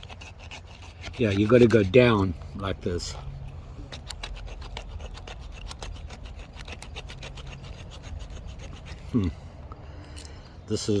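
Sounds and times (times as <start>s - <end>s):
knife scraping wood: 0.0s - 3.1s, 3.8s - 9.3s.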